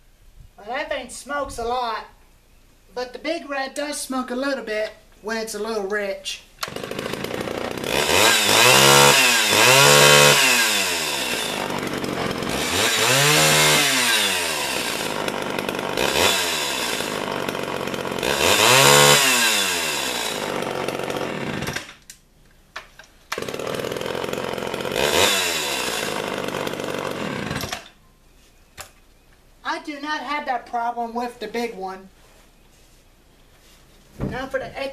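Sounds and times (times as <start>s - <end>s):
chainsaw revving and idling: 6.6s - 22.0s, 23.3s - 28.0s.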